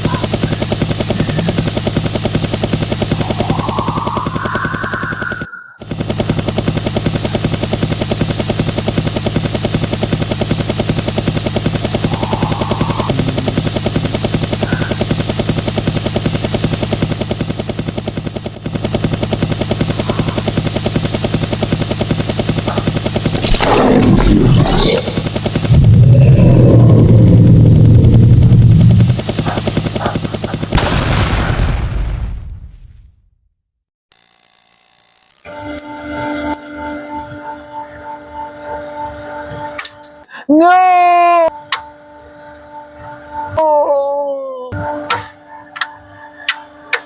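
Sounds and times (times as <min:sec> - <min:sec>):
helicopter rotor drone: 0:00.0 - 0:31.2, 0:34.2 - 0:47.0
rushing burst: 0:01.0 - 0:06.2
heavy low rumble: 0:11.7 - 0:14.7, 0:23.4 - 0:30.8.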